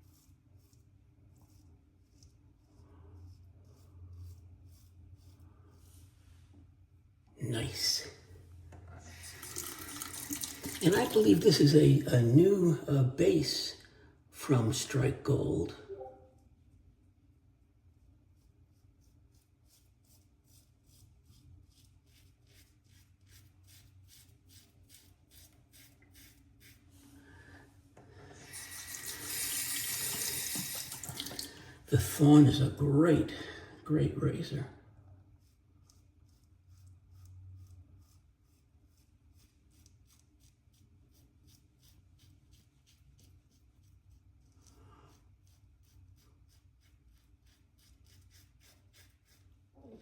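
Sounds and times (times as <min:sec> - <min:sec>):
razor scraping stubble: 0:18.7 - 0:26.9, 0:35.3 - 0:50.0.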